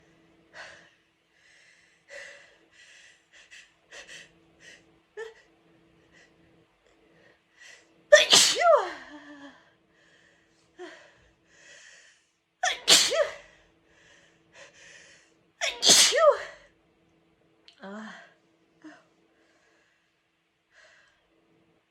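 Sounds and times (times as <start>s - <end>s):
woman sneezing: 8.2s - 8.9s, 12.6s - 13.4s, 15.6s - 16.6s.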